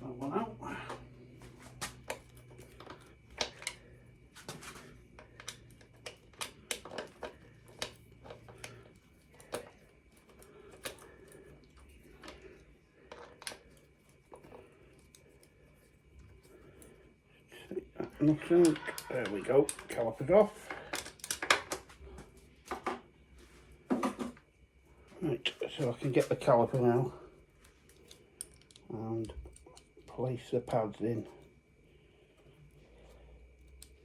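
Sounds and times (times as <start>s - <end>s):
hand tools clicking on metal: 18.0s - 21.8s.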